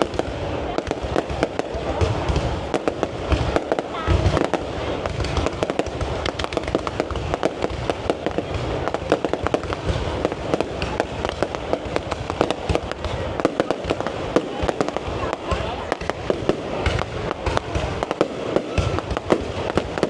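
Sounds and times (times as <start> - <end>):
fireworks cracking and popping: 0.0 - 20.0.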